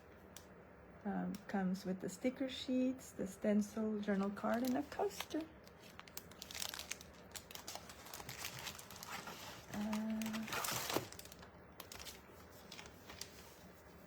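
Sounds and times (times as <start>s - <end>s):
paper and packaging crinkling: 4.0s - 14.0s.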